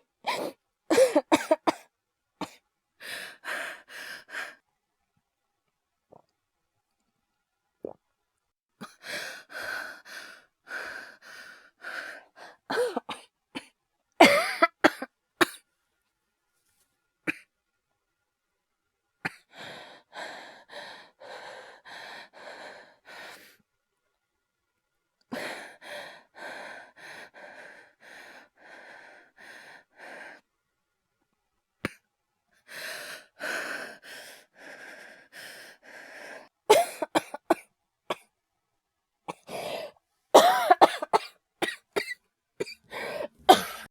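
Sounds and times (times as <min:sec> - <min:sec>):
person coughing: 0:00.4 - 0:01.8, 0:12.7 - 0:15.6, 0:36.7 - 0:38.2, 0:40.4 - 0:43.9.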